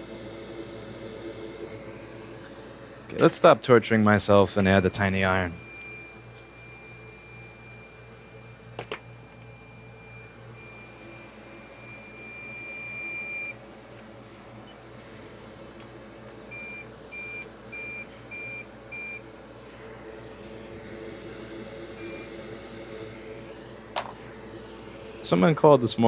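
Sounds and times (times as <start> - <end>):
low equipment hum: 0.0 - 26.0
steady high beep: 11.8 - 13.5.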